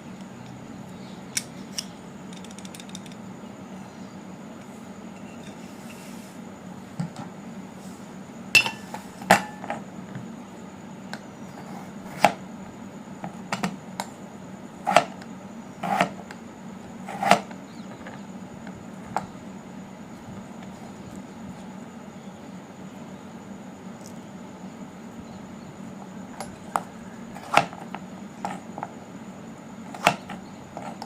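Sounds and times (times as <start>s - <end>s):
steady low hum: 0.0s - 31.0s
dishes knocking and clinking: 8.6s - 9.7s.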